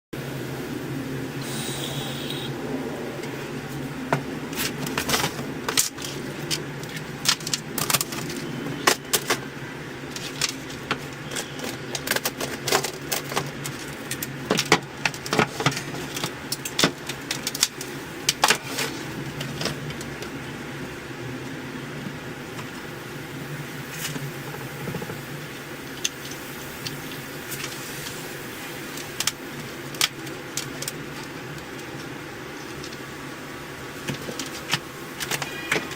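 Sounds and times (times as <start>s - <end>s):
steady low hum: 0.1s - 35.9s.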